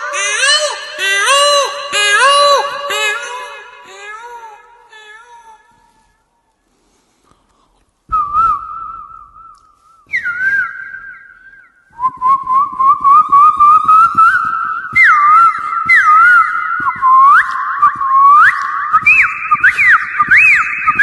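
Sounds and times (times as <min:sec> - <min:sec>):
man whistling bird calls: 0:08.1 - 0:21.0.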